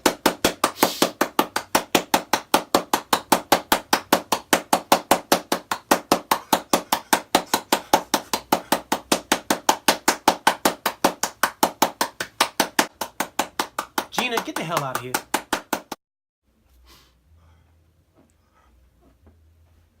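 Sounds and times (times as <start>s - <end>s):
rapid sharp knocking: 0.0s - 16.0s.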